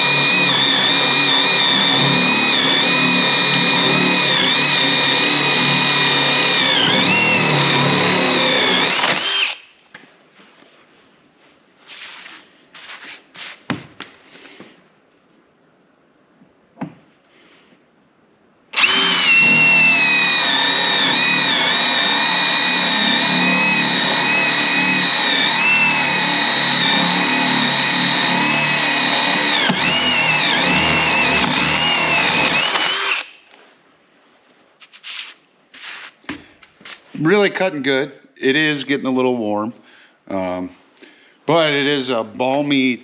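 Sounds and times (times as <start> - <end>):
impact driver motor whine: 0.0 - 9.6, 18.8 - 33.4.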